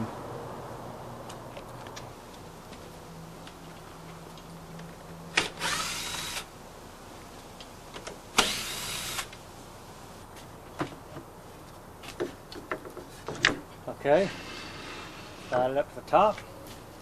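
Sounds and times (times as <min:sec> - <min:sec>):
cordless drill running: 0:05.4 - 0:06.5, 0:08.4 - 0:09.3.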